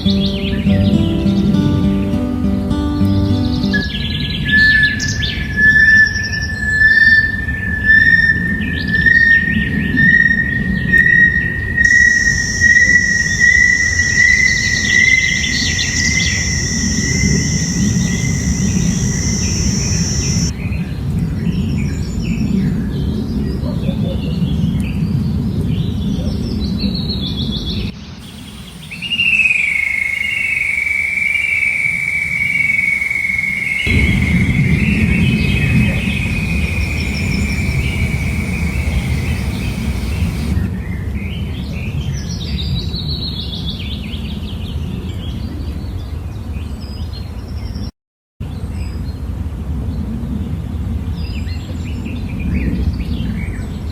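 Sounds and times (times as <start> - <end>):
birds chirping and calling: 11.9 - 20.5, 28.2 - 40.6
high-pitched insect drone: 11.9 - 20.5, 28.2 - 40.6
low rumble: 33.0 - 40.6.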